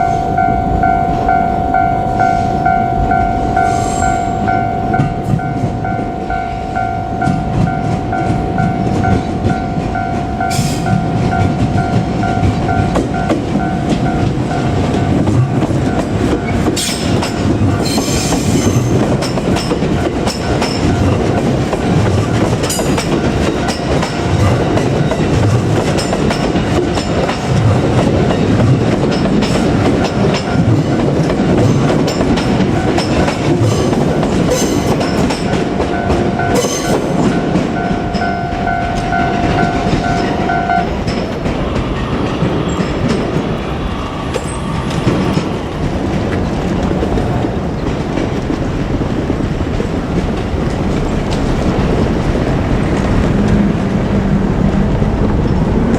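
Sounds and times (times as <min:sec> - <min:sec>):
steady tone: 0:00.0 - 0:15.5, 0:35.0 - 0:48.1
train wheels rumbling on rails: 0:00.0 - 0:55.9
clickety-clack over rail joints: 0:04.9 - 0:55.9.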